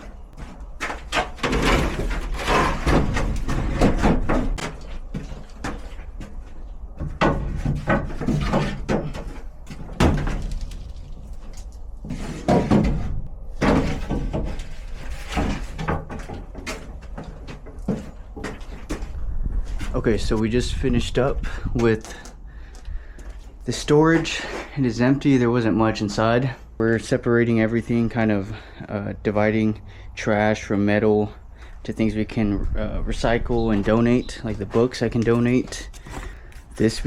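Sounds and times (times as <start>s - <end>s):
household items banging and clattering: 0.0s - 19.2s.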